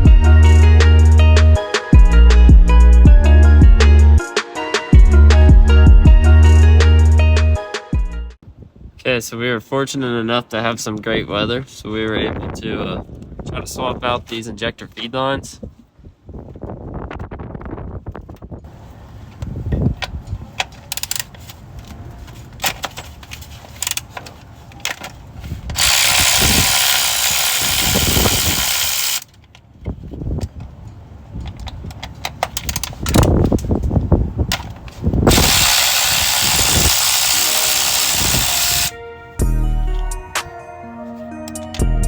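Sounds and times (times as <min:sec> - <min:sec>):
power tool hissing: 0:25.8 - 0:29.2, 0:35.3 - 0:38.9
metal tool clicks and knocks: 0:31.4 - 0:33.7.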